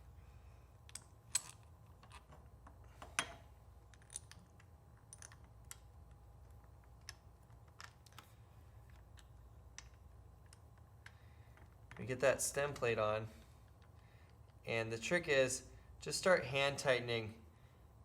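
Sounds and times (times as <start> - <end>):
small metal parts clicking: 0.8 - 2.4, 3.9 - 8.3.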